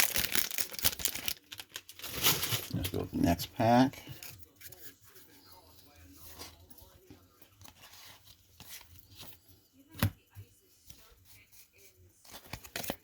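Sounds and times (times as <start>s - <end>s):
wrapper and cards rustling: 0.0s - 5.1s, 12.2s - 13.0s.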